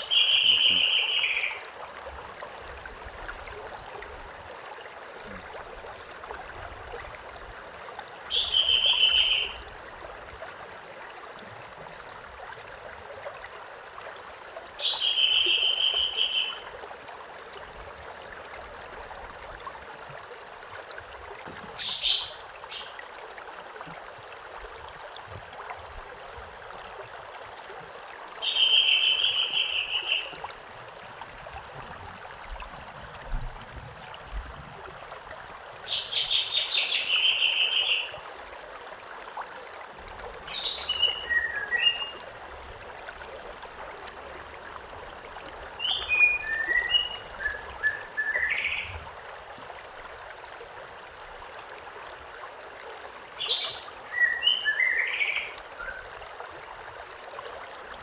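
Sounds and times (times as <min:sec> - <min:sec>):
songbird singing: 0:00.0 - 0:01.6, 0:08.3 - 0:09.7, 0:14.8 - 0:16.6, 0:21.8 - 0:23.2, 0:28.4 - 0:30.4, 0:35.8 - 0:38.2, 0:40.5 - 0:42.2, 0:45.8 - 0:49.0, 0:53.4 - 0:56.0
stream trickling: 0:00.0 - 0:58.0.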